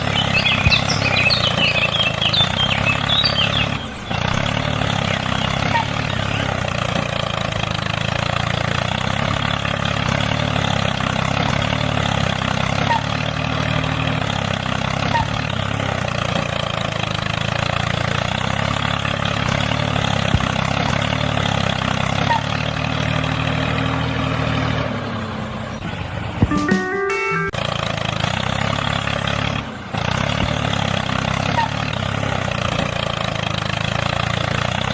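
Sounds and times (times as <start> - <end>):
motor running steadily: 0.0 - 8.4.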